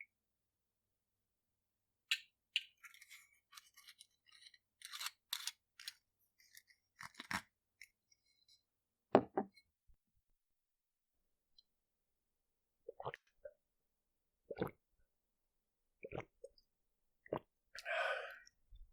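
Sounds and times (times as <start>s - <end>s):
bottle screw cap clicking and scraping: 2.1s - 8.5s.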